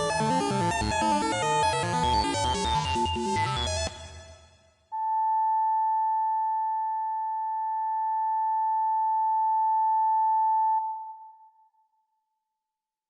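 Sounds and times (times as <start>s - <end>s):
steady electronic monitor beep: 5.0s - 11.2s.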